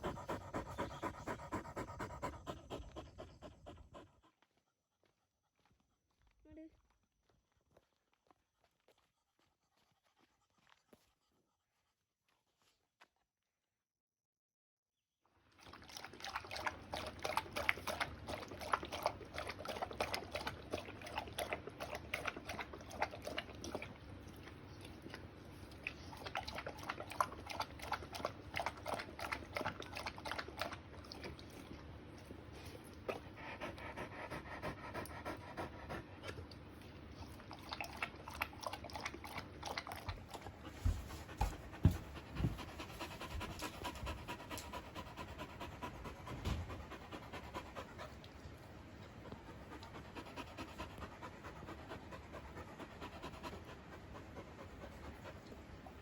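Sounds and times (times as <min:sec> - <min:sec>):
dog panting fast: 0:00.0 - 0:05.8, 0:32.5 - 0:36.7, 0:39.2 - 0:56.0.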